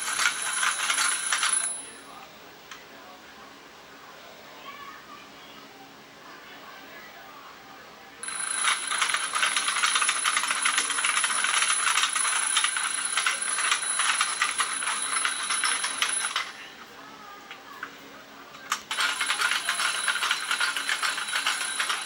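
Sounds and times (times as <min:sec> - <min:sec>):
alarm clock bell ringing: 0:00.0 - 0:01.9, 0:08.2 - 0:16.6, 0:18.9 - 0:22.0.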